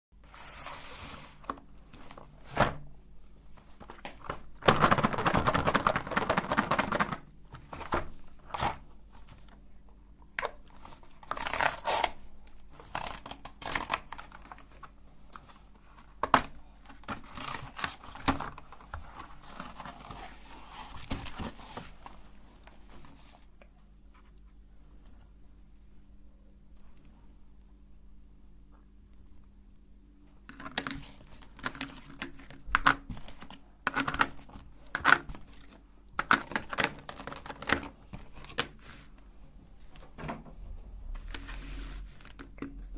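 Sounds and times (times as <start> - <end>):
candy wrappers tearing and crinkling: 11.2 - 14.6.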